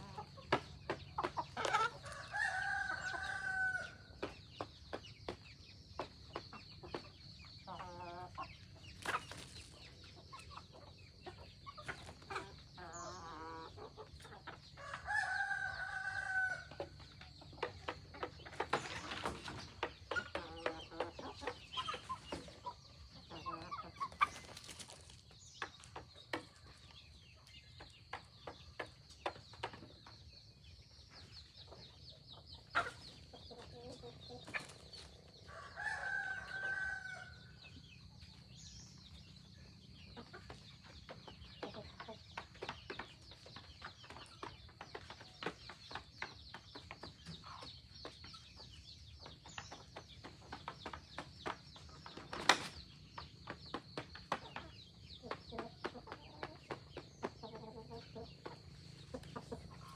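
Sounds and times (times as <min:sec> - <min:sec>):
chickens clucking: 0:00.0 - 0:59.9
rooster crowing: 0:35.5 - 0:37.4.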